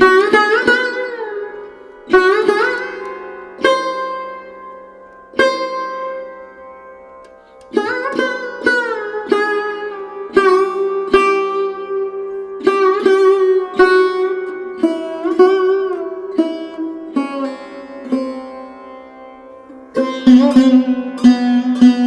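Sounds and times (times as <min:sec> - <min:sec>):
plucked string instrument notes: 0:00.0 - 0:22.0.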